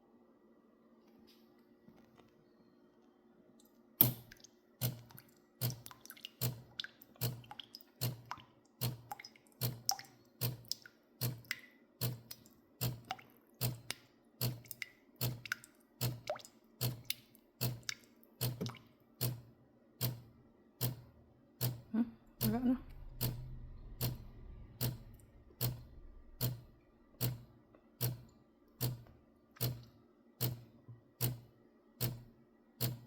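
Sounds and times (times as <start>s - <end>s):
faint hum: 19.6s - 32.8s.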